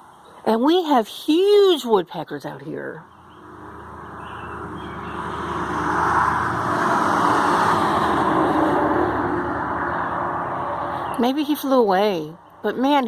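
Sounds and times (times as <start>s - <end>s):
vehicle driving past: 3.0s - 11.2s.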